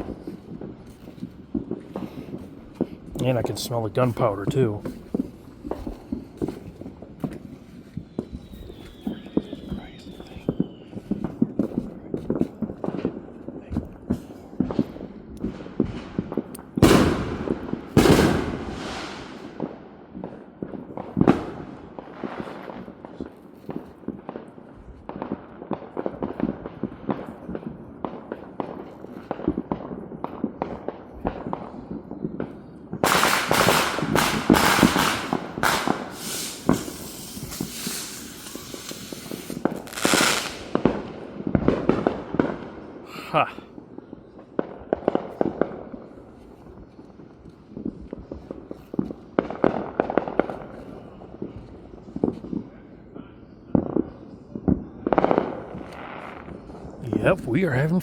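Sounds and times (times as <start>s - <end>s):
big firework blasts: 0.0s - 43.8s
fireworks cracks pops and booms: 0.0s - 52.8s, 53.7s - 58.0s
dense crackling firework barrage: 0.0s - 58.0s.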